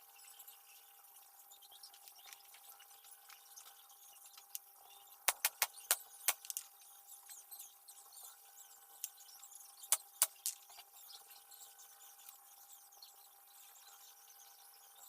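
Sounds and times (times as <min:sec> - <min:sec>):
faint steady hum: 0:00.0 - 0:15.0
small hard objects clicking: 0:05.3 - 0:06.8, 0:09.9 - 0:10.8.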